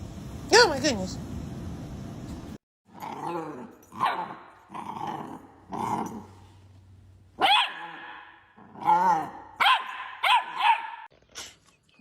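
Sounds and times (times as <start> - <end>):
dog growling: 2.9 - 3.8, 4.7 - 6.4
dog barking: 7.4 - 11.1.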